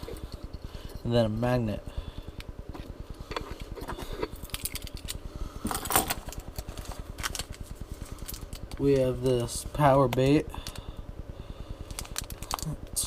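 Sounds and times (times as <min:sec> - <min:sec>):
low fast-pulsing hum: 0:00.0 - 0:13.0
fishing tackle clicking and rattling: 0:04.4 - 0:07.5.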